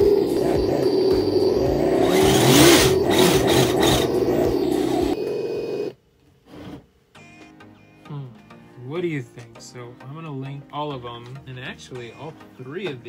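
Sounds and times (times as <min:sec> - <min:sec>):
synthetic engine sound from speaker: 0:00.0 - 0:05.9.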